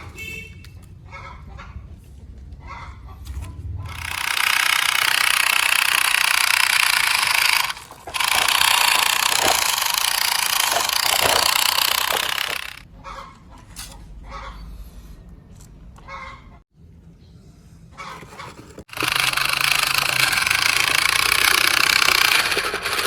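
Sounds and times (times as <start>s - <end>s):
harsh mechanical noise: 3.2s - 12.9s, 18.0s - 23.0s.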